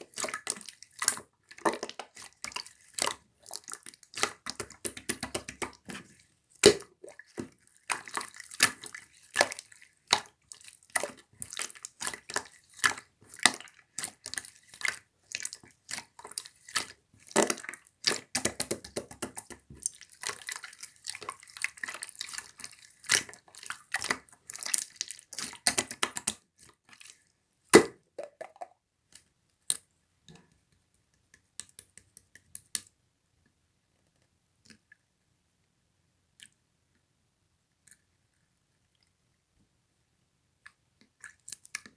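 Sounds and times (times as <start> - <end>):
slime squishing with sticky pops: 0.1 - 10.3, 11.0 - 26.4.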